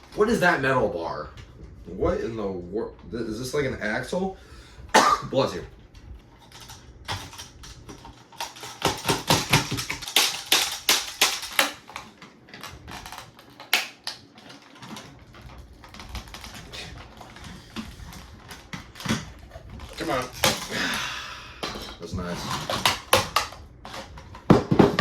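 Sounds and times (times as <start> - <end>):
plastic parts clicking: 6.4 - 21.0, 21.6 - 25.0.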